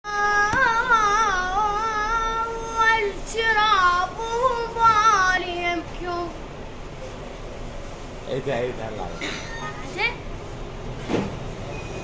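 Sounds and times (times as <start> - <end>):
high solo voice singing: 0.0 - 6.3.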